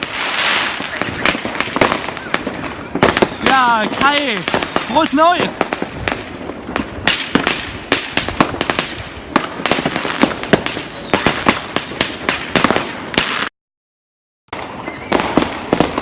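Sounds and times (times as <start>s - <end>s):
firecrackers crackling: 0.0s - 13.5s, 14.5s - 16.0s
fireworks banging: 0.0s - 13.5s, 14.5s - 16.0s.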